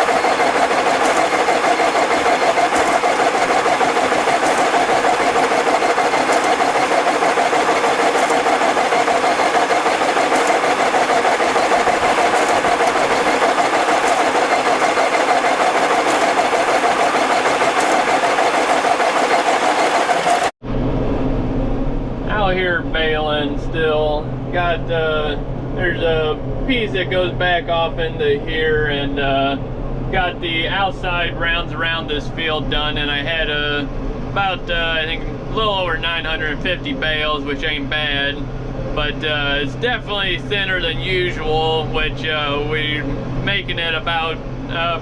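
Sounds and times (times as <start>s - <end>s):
tractor engine running under load: 0.0s - 20.6s.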